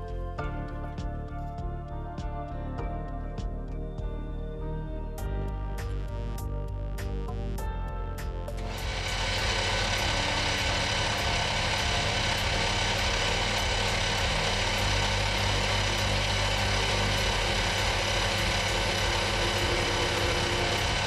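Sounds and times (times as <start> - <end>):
machine tool humming: 8.5 - 21.0.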